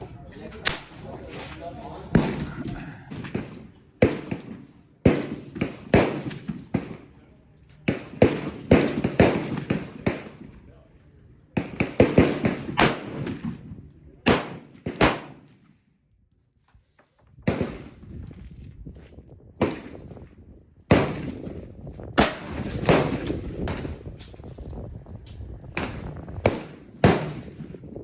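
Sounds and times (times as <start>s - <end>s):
gunshots: 0.6s - 1.5s, 2.1s - 7.1s, 7.9s - 10.4s, 11.6s - 13.6s, 14.2s - 15.6s, 17.5s - 18.0s, 20.9s - 21.6s, 22.2s - 23.9s, 25.8s - 27.7s.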